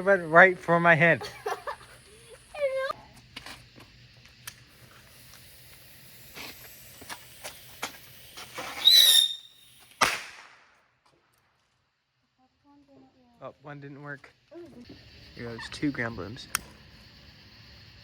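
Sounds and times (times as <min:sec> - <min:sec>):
firework pops and crackles: 0:03.1 - 0:11.8, 0:14.5 - 0:17.4
firework bang: 0:04.7 - 0:10.8
shrill firework whistle: 0:04.8 - 0:10.6.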